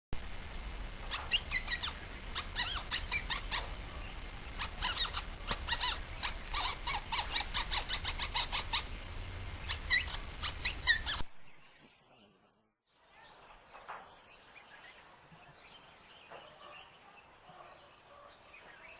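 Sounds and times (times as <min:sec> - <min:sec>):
low background rumble: 0:00.2 - 0:11.2
birds chirping and singing: 0:01.1 - 0:12.3, 0:13.1 - 0:18.9.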